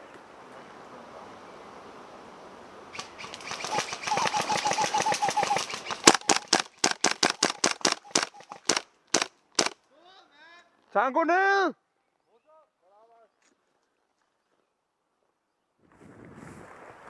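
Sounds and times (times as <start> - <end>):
airsoft gun full-auto rattle: 3.0 - 9.8
airsoft gun single shots: 5.5 - 9.8.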